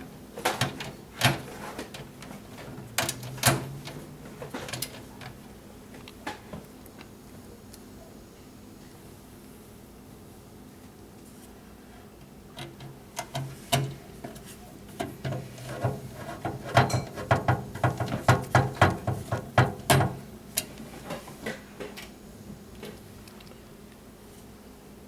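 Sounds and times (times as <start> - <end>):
computer parts clicking and knocking: 3.0 - 5.3, 15.0 - 20.2.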